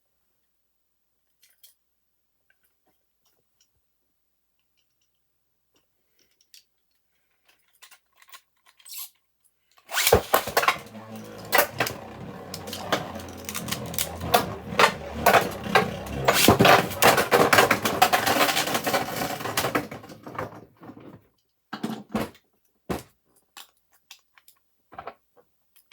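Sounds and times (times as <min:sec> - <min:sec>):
spinning tops whirring: 0:09.9 - 0:20.4.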